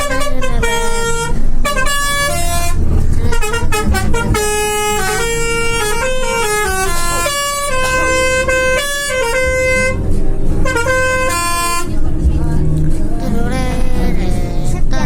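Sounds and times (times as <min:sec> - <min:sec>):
multi-tone air horn playing a tune: 0:00.0 - 0:12.0
bus engine running: 0:00.0 - 0:15.0.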